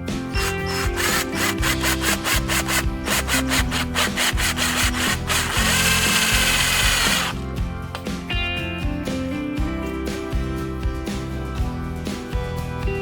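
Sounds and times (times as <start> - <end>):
background music: 0.0 - 13.0
whirring grind: 0.1 - 7.4
tool rasping strokes: 0.4 - 7.4.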